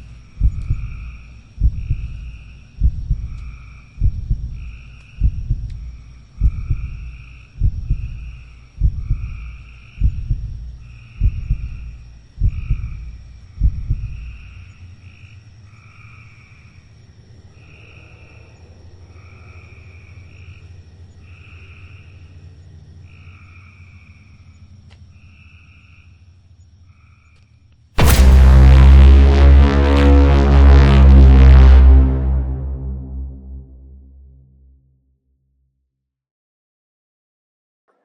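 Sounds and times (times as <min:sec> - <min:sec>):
deep heartbeat thumps: 0:00.4 - 0:03.4, 0:04.0 - 0:09.4, 0:10.0 - 0:13.0
thin high whine: 0:28.0 - 0:34.4
low steady drone: 0:28.0 - 0:34.6.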